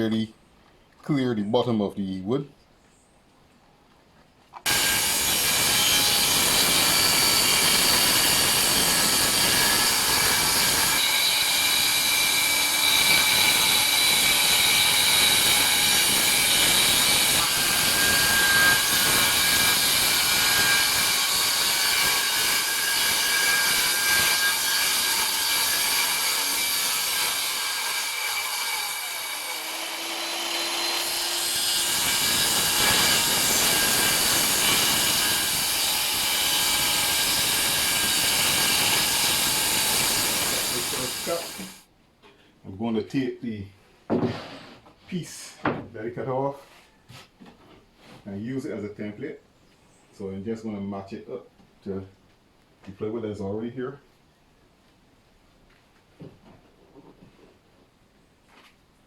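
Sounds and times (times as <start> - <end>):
circular saw cutting plywood: 4.6 - 41.8.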